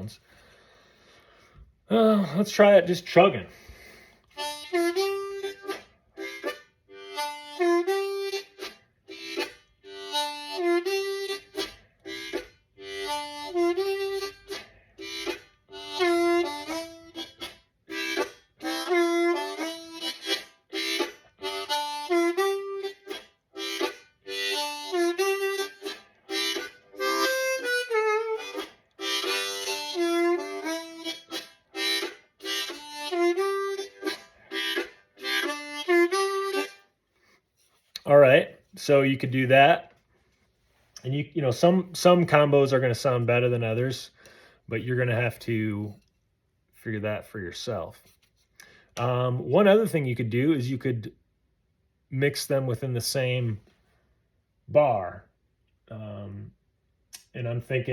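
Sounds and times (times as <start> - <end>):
blues harmonica: 0.0 - 38.0, 41.7 - 46.2.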